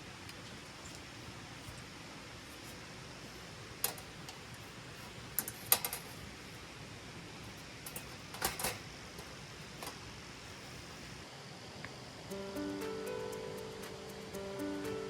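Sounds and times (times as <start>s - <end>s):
faint hiss: 0.0s - 15.0s.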